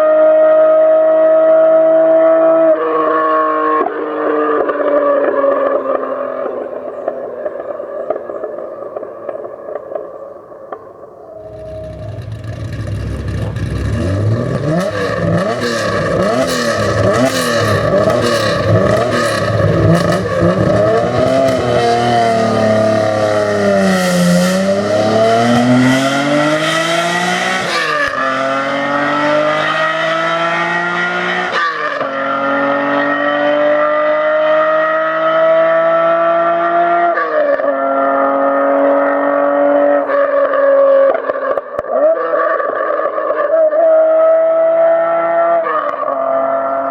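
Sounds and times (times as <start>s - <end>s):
car engine revving: 11.4s - 37.2s
car accelerating through gears: 11.4s - 41.0s, 44.1s - 46.9s.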